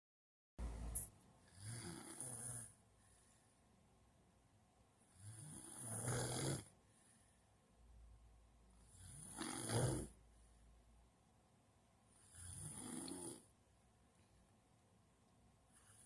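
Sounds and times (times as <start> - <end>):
low rasping snores: 1.5 - 2.8, 5.1 - 6.7, 8.8 - 10.2, 12.1 - 13.5, 15.8 - 16.0.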